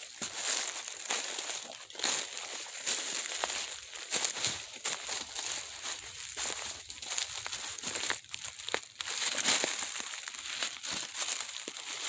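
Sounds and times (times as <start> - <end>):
footsteps crunching dry leaves: 0.0 - 12.0.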